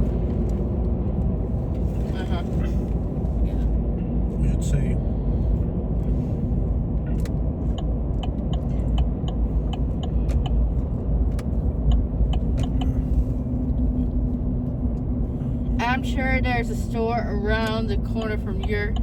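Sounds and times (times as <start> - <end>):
car road noise rumble: 0.0 - 19.0
light ticks: 11.3 - 13.0, 17.6 - 19.0.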